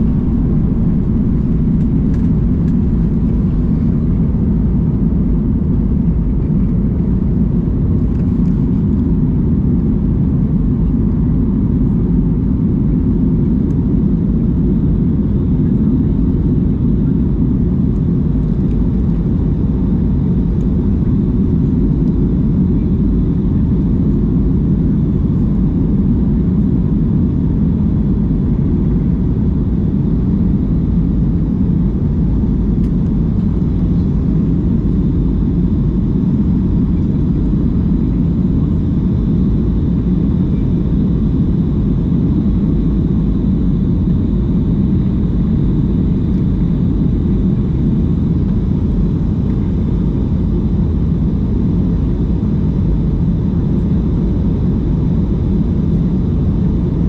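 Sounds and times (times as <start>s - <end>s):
air rushing over fuselage: 0.0s - 5.0s
faint high whine: 0.0s - 6.8s
jet engines at climb power: 0.0s - 57.0s.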